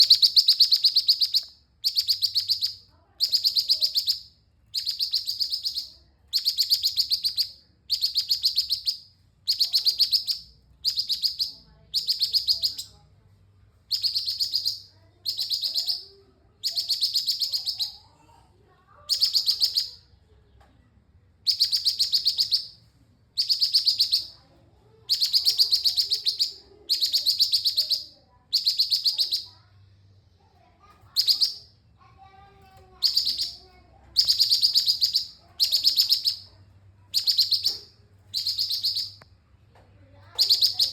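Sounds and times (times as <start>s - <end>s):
bulbul singing rapid chattering notes: 0.0s - 12.9s, 13.9s - 18.0s, 21.5s - 22.8s, 23.4s - 24.4s, 25.0s - 29.5s, 33.0s - 39.2s, 40.2s - 40.9s.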